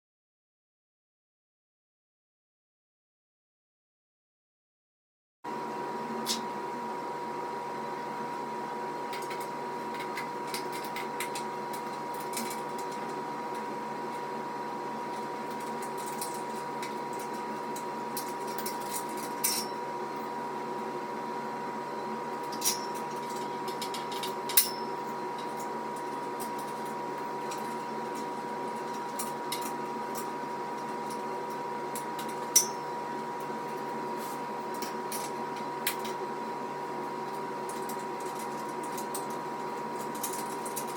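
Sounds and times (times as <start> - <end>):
steady hum: 5.6 - 40.9
metal parts clinking together: 18.2 - 19.8, 22.5 - 24.8, 40.0 - 40.9.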